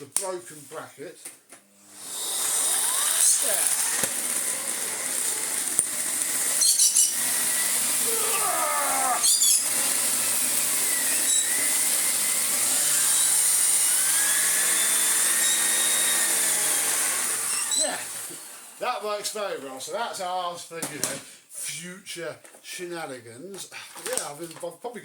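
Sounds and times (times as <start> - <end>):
vacuum cleaner brush whining: 1.8 - 19.9
clattery bursts: 2.4 - 7.3.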